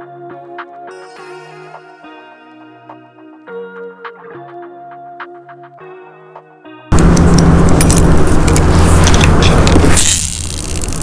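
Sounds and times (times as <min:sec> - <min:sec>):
sustained synthesizer chords: 0:06.9 - 0:11.0.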